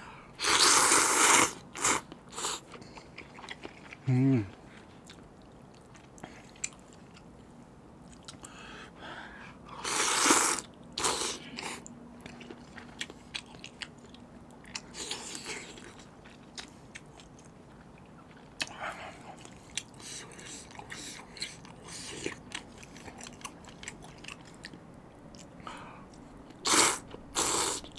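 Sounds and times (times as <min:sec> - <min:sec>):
wet chewing with clicks: 0:04.7 - 0:08.6, 0:11.6 - 0:27.2.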